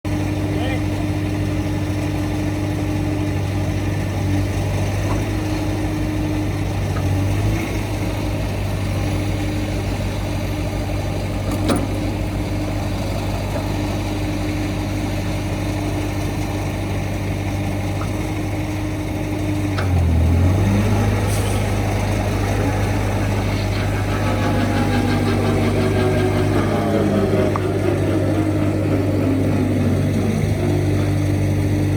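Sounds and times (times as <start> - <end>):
engine running: 0.1 - 31.9
rising and falling tones: 20.2 - 31.9.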